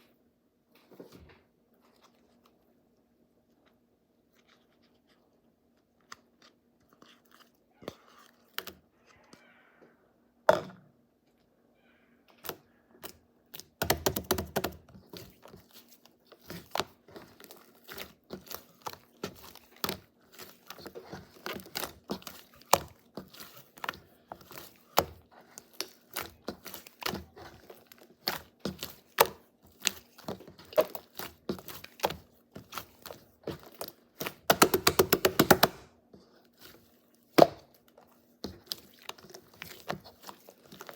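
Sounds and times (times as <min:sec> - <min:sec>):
slime clicking and popping: 0:33.6 - 0:35.8.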